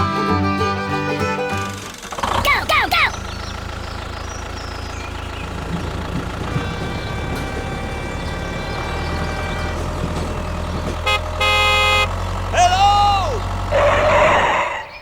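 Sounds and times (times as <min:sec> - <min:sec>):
horn-like beeping tone: 0:11.0 - 0:12.2.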